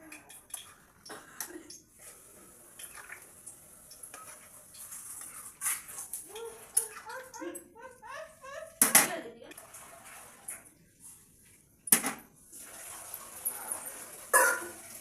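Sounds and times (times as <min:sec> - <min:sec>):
metal spoon scraping a pan: 0:03.9 - 0:07.0.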